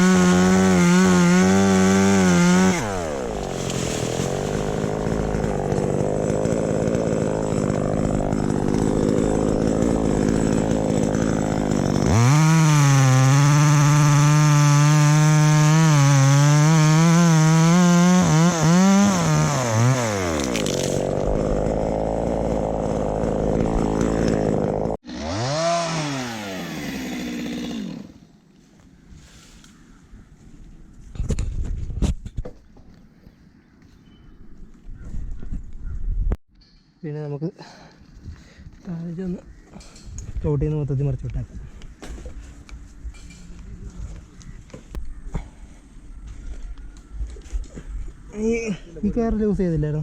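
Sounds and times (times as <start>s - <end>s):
chainsaw revving and cutting wood: 0.0s - 28.2s.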